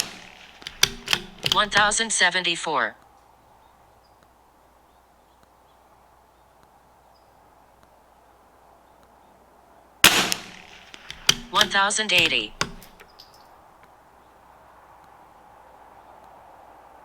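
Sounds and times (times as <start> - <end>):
rifle shot: 0.0 - 2.0, 10.0 - 13.0.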